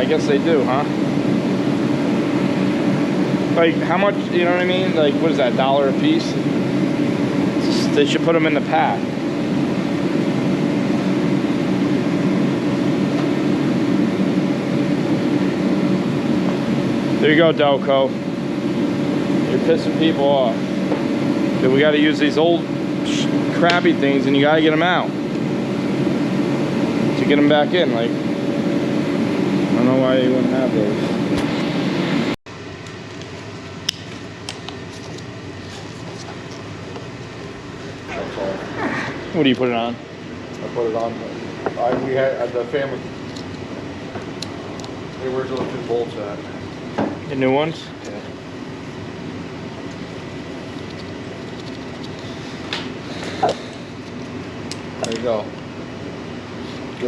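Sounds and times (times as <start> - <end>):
machine humming: 0.0 - 57.0.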